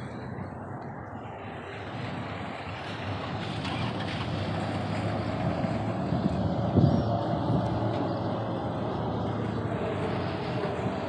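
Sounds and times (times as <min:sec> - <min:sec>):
vehicle engine and tyre rumble: 0:00.0 - 0:11.0.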